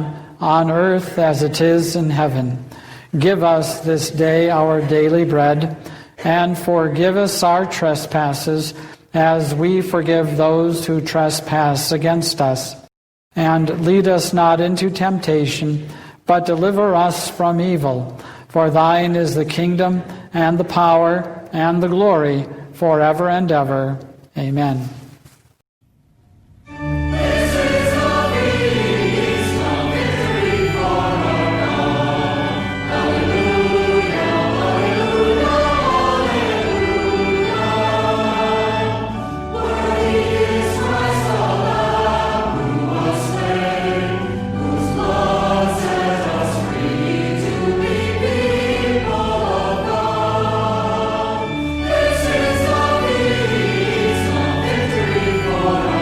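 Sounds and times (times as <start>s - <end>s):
choir singing a hymn: 3.2s - 8.0s, 26.7s - 56.0s
low instrumental accompaniment: 26.7s - 56.0s.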